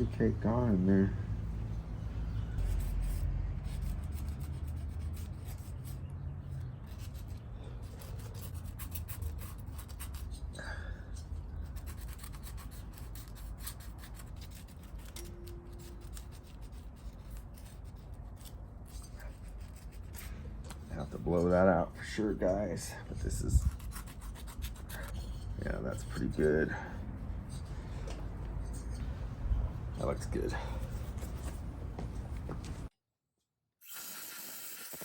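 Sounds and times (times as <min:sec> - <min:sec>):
scrubbing and scraping metal: 0:02.3 - 0:32.8
low hum: 0:26.7 - 0:32.9.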